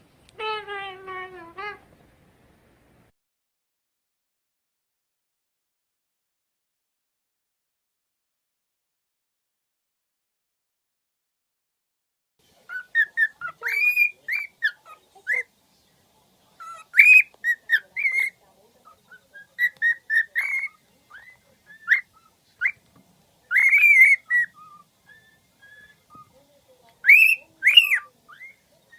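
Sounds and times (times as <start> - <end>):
bird whistling: 12.7 - 15.5, 16.6 - 22.8, 23.5 - 26.4, 27.0 - 28.9.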